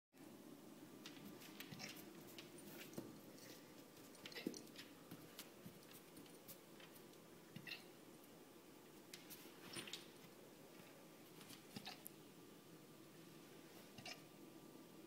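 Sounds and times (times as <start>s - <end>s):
puppy hiccupping: 7.6s - 7.9s.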